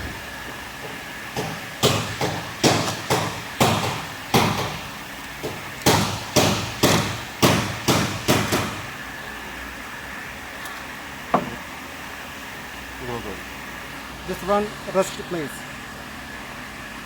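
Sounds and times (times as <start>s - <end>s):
hammer striking metal: 5.8s - 8.9s.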